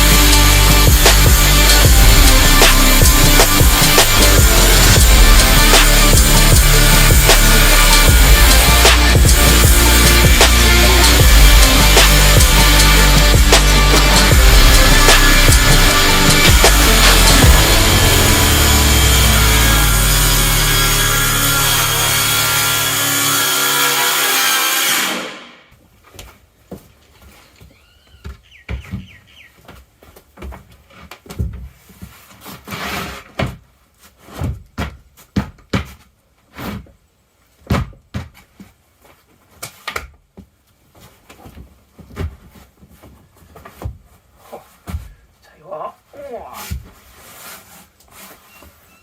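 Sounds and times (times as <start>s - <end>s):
power saw cutting wood: 0.0s - 25.7s.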